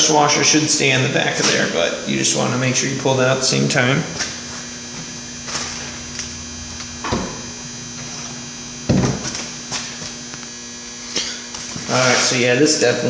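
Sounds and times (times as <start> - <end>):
electrical mains hum: 0.0 - 13.0.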